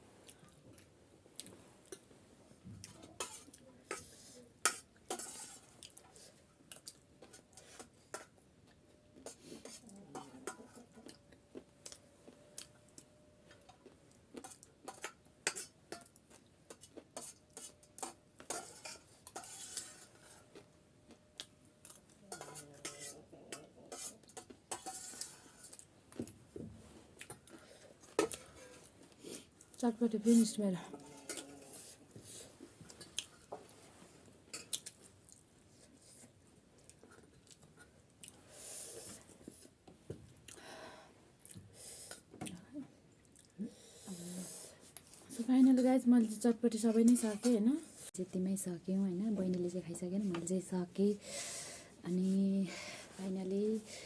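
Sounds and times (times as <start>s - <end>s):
spoon scraping a bowl: 3.2s - 5.8s, 16.7s - 20.5s, 22.3s - 25.8s, 30.3s - 32.4s.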